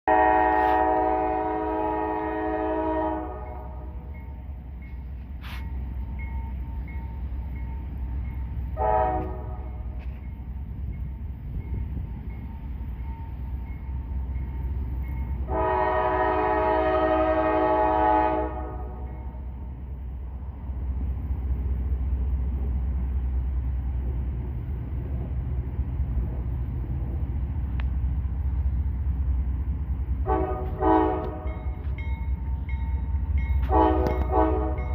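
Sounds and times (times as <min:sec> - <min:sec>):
train horn blasts: 0:00.1 - 0:04.0, 0:08.7 - 0:10.2, 0:15.4 - 0:19.5, 0:30.2 - 0:32.0, 0:33.3 - 0:34.9
steady low rumble: 0:18.9 - 0:34.9.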